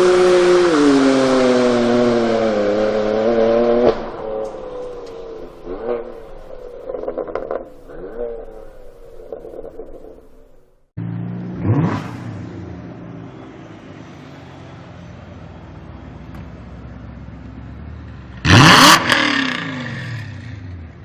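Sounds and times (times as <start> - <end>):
exhaust crackling: 0.0 - 12.4
car engine revving: 0.0 - 13.0, 17.8 - 21.0.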